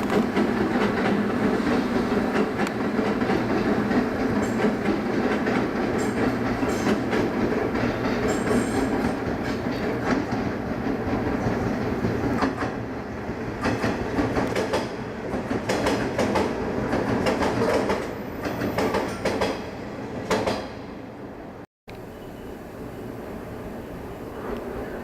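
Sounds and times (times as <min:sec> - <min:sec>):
wheels clicking over rail joints: 0:00.0 - 0:19.6
train rumbling: 0:00.0 - 0:25.0.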